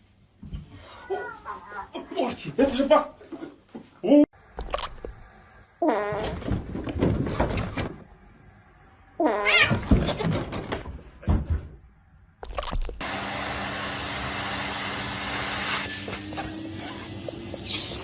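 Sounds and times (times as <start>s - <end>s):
knocks and clatter: 6.2s - 8.1s, 9.7s - 11.8s
cat meowing: 9.2s - 9.9s.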